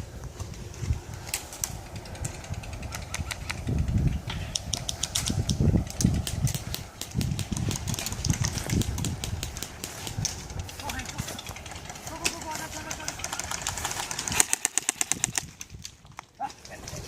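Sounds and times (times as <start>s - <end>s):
low thumps and rumble: 0.0s - 12.2s
airsoft guns firing: 6.0s - 15.6s.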